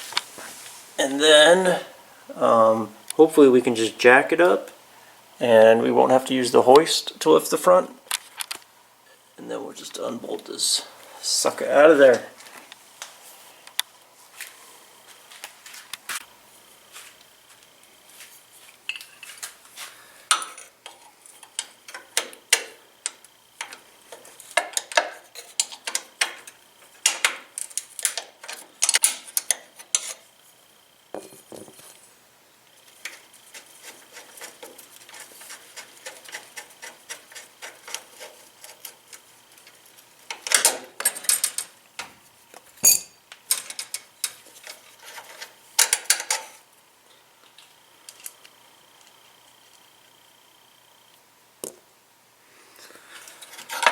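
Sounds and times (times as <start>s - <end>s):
wrenches clinking against metal: 42.8s - 46.6s.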